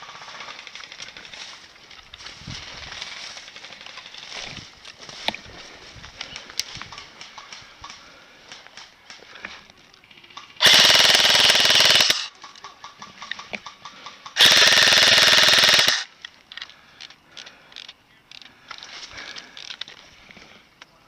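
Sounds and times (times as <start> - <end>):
airsoft gun full-auto bursts: 10.6 - 12.3, 14.4 - 16.1.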